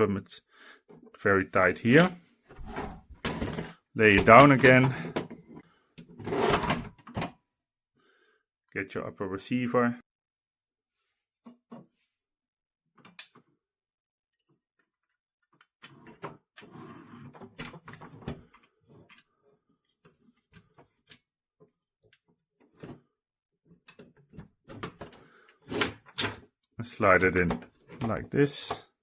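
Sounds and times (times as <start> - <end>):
parts rubbing and scraping: 1.8 - 5.3.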